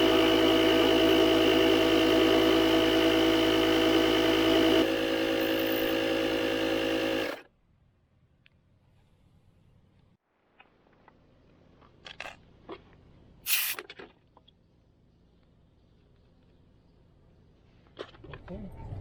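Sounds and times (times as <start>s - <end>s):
riding lawn mower engine: 0.0s - 7.5s.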